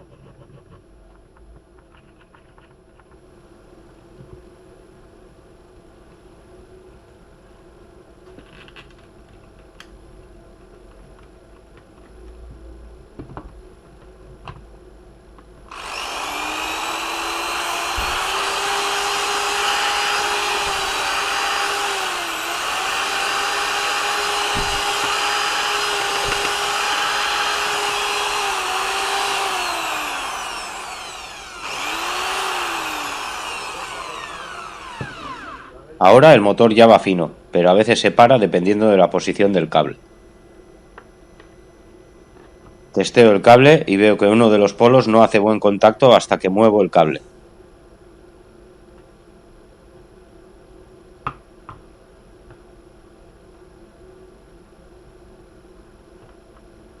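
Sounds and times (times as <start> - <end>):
electric drill motor running: 15.7 - 35.8.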